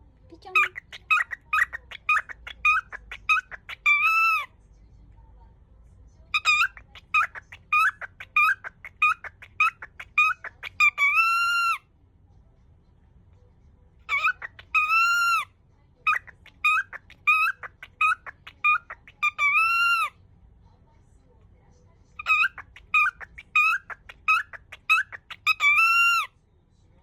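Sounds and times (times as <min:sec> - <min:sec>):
cockatiel chattering: 0:00.4 - 0:04.5, 0:06.3 - 0:11.8, 0:14.1 - 0:20.2, 0:22.2 - 0:26.3.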